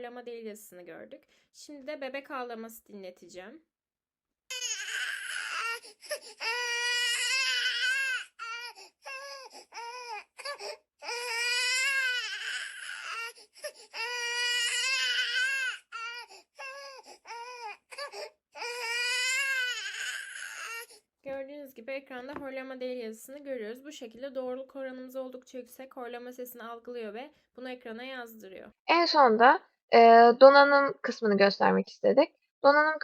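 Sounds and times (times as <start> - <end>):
infant crying: 4.5 - 21.0.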